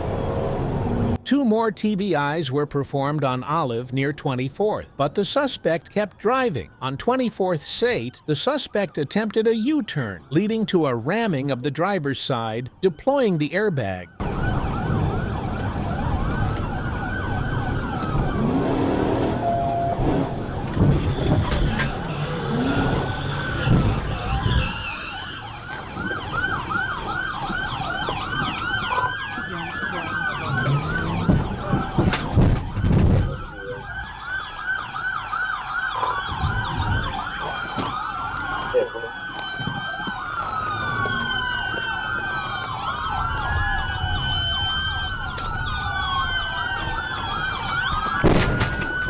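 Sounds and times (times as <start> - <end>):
police sirens wailing and yelping: 1.1 - 49.0.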